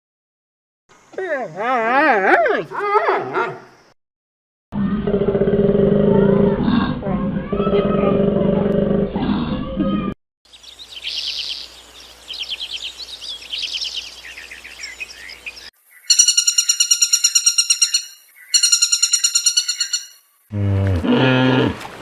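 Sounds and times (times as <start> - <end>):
songbird trilling: 10.5 - 20.2
bird call of rapid pulses: 10.5 - 20.3.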